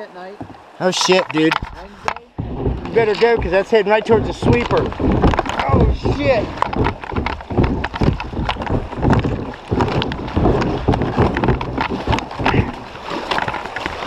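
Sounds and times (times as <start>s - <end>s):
kayak paddle splashing: 0.0s - 14.0s
rushing river water: 0.0s - 14.0s
paddle knocks: 0.2s - 14.0s.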